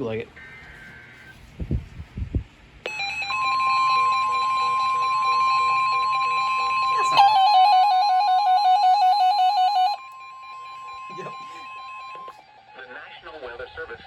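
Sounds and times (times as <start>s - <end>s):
steady alert tone: 2.9s - 12.4s
warbling alarm: 2.9s - 12.8s.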